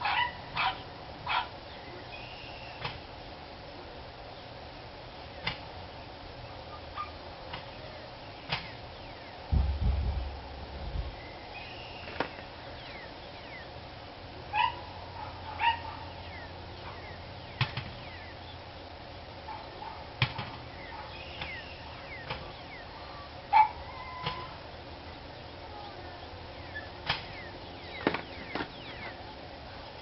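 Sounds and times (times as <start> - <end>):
dog barking: 0.0 - 1.5, 7.0 - 7.2, 14.5 - 16.2, 19.5 - 20.1, 20.9 - 21.2, 23.5 - 23.8
birds chirping: 0.0 - 3.0, 3.6 - 30.0.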